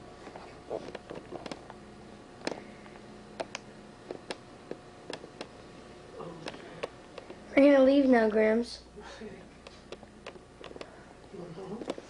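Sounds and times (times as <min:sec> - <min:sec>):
faint room hum: 0:00.0 - 0:12.0.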